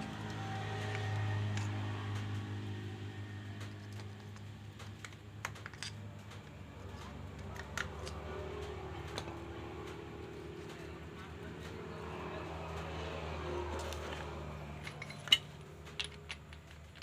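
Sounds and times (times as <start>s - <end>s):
small metal parts clicking: 3.6s - 8.4s, 13.8s - 17.0s.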